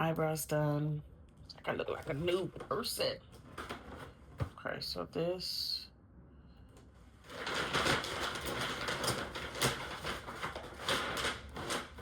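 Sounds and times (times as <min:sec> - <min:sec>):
plastic packaging crinkling: 0:07.2 - 0:12.0.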